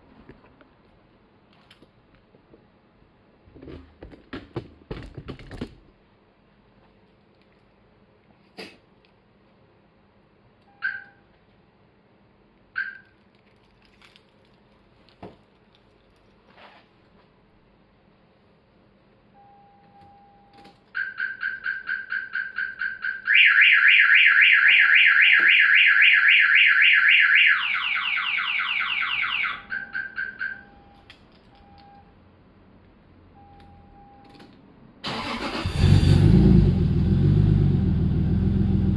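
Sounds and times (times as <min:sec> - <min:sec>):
faint low beep: 0:19.4 - 0:20.6, 0:29.7 - 0:32.1, 0:33.4 - 0:34.4
car alarm siren: 0:20.9 - 0:31.0
siren chirps: 0:21.0 - 0:31.0.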